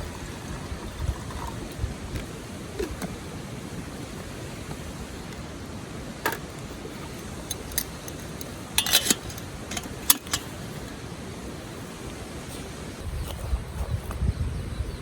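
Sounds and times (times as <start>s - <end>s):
sharp clicks and clinks: 7.1s - 10.6s.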